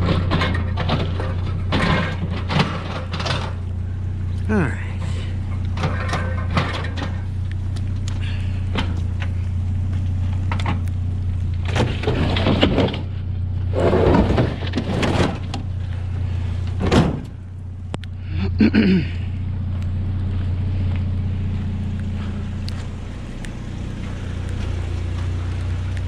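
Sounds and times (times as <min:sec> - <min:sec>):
knocks and clatter: 0:00.0 - 0:03.8, 0:05.4 - 0:15.9, 0:16.6 - 0:17.5
vehicle engine humming: 0:00.0 - 0:26.0.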